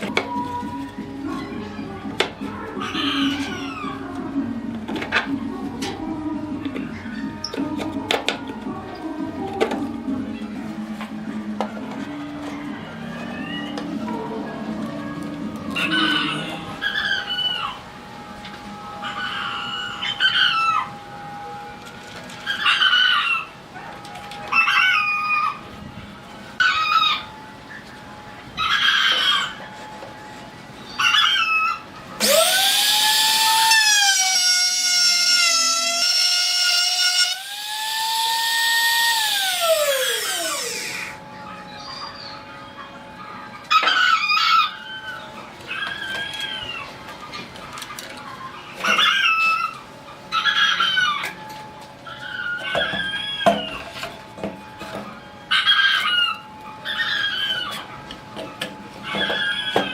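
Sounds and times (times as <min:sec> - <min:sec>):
chickens calling: 0:00.0 - 0:04.5, 0:11.7 - 0:17.9, 0:19.0 - 0:21.0, 0:22.2 - 0:25.8, 0:26.4 - 0:38.6, 0:39.4 - 0:59.9
small electric motor whining: 0:32.2 - 0:41.2.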